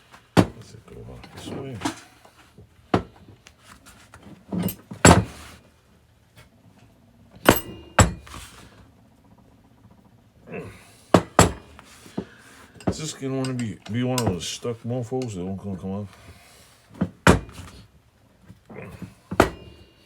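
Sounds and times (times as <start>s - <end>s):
sharp metal clanks: 7.4s - 8.4s, 11.2s - 11.8s
steel vise parts clinking: 7.5s - 8.4s, 12.8s - 14.6s.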